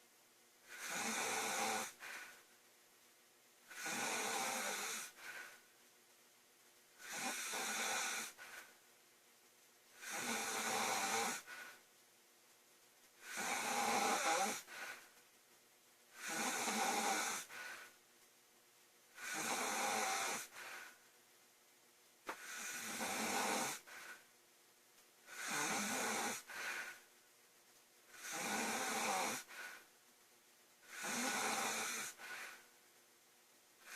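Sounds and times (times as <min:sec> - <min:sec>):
quiet breaths: 0:00.0 - 0:33.9
woman snoring: 0:00.6 - 0:02.4, 0:03.7 - 0:05.6, 0:07.0 - 0:08.7, 0:10.0 - 0:11.8, 0:13.2 - 0:15.1, 0:16.1 - 0:17.9, 0:19.2 - 0:21.0, 0:22.3 - 0:24.2, 0:25.2 - 0:27.0, 0:28.1 - 0:29.8, 0:30.8 - 0:32.6.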